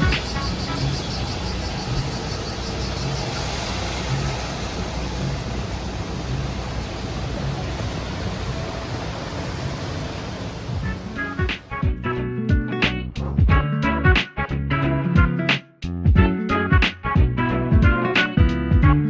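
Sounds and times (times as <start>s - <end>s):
rushing noise: 0.0s - 12.3s
low engine drone: 0.0s - 14.0s.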